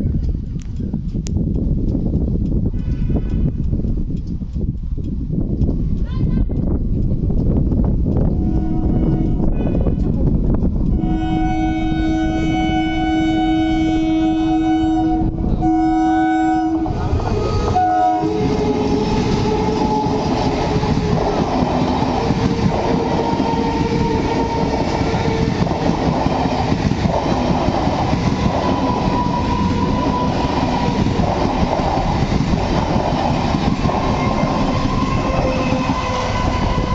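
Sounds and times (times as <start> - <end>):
train rushing past: 7.8 - 36.9
train horn blasts: 8.3 - 10.0, 10.8 - 21.4, 22.2 - 25.5, 28.6 - 31.0, 34.1 - 36.9.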